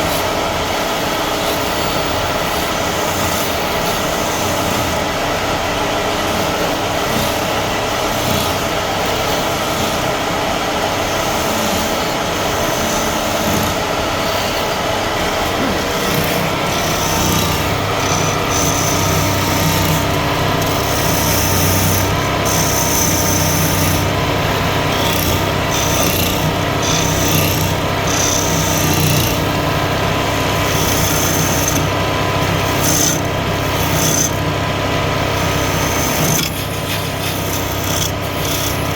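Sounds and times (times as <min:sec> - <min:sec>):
wood lathe running: 0:00.0 - 0:38.9
hand tool cutting spinning wood: 0:11.1 - 0:38.9.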